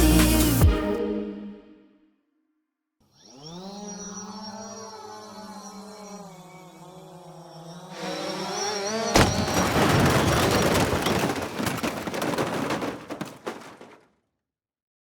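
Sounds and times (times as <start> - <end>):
crackling rumble with sharp cracks: 9.2 - 14.0.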